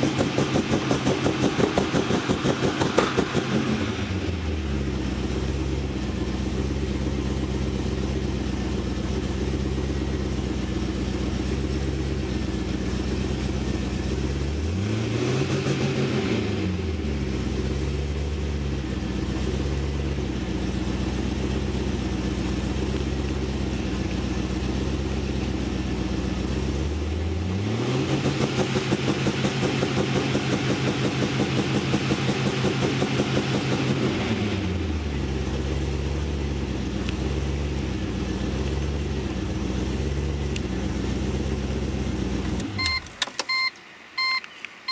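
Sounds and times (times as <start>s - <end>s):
engine stuttering on rev limiter: 0.0s - 7.7s, 11.4s - 20.2s, 26.4s - 43.0s
car engine idling and revving: 0.0s - 44.9s.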